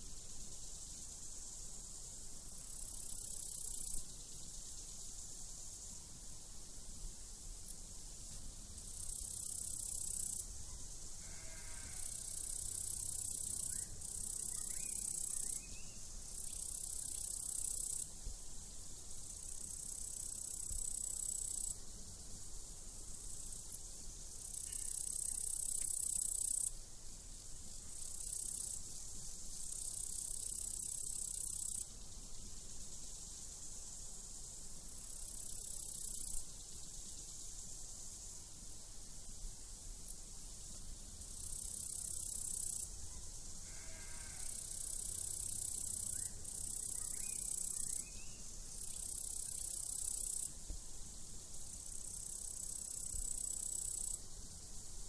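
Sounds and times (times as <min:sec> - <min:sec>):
crickets chirping: 0:00.0 - 0:55.0
sheep bleat: 0:11.2 - 0:12.2, 0:43.6 - 0:44.5.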